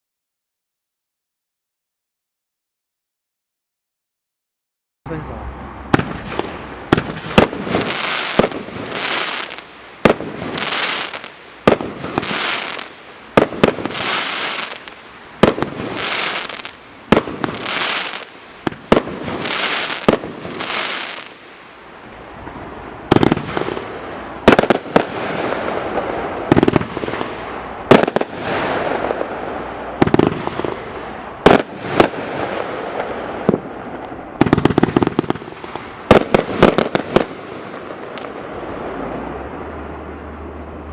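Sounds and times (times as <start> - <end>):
firework shots with hissing bursts: 5.1 - 40.9
rapid firework pops: 5.9 - 21.4, 23.1 - 29.3, 30.0 - 38.3.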